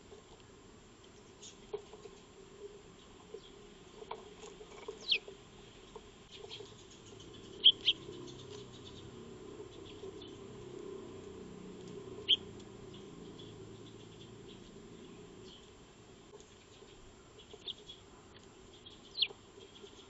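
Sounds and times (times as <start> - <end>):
sparrow chirps: 4.8 - 5.3, 6.3 - 15.8, 16.5 - 20.0.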